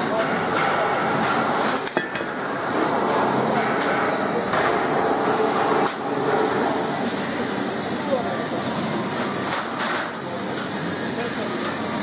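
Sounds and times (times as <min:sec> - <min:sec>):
plasma cutter hiss and crackle: 0:00.0 - 0:12.0.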